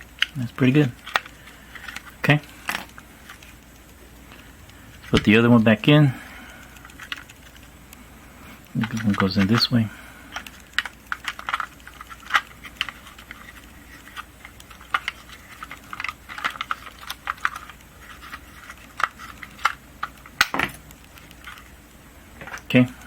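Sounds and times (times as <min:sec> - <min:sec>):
plastic parts clicking: 0:00.0 - 0:05.4, 0:06.6 - 0:07.7, 0:08.7 - 0:21.7
plastic snap: 0:19.0 - 0:20.8.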